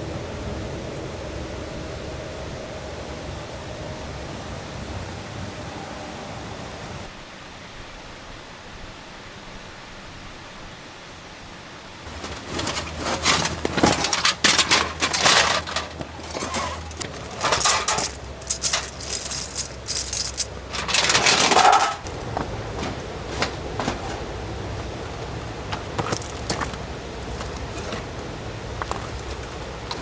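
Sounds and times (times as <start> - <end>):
metal gear clinking and clattering: 12.1 - 28.2, 28.8 - 30.0.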